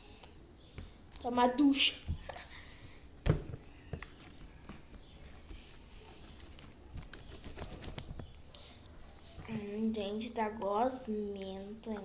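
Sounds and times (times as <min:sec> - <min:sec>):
slime squelching while kneaded: 0:00.0 - 0:09.5.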